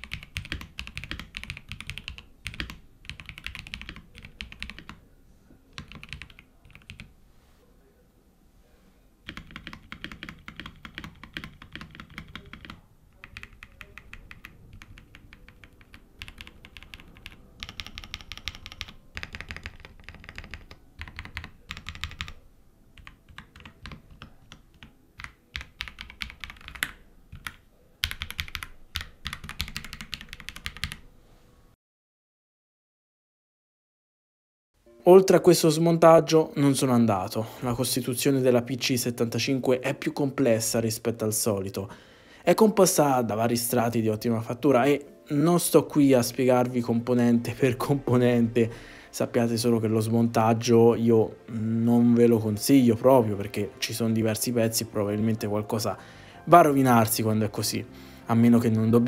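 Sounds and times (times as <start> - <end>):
mechanical keyboard typing: 0.0 - 5.0, 5.7 - 7.1, 9.2 - 22.4, 23.0 - 31.0.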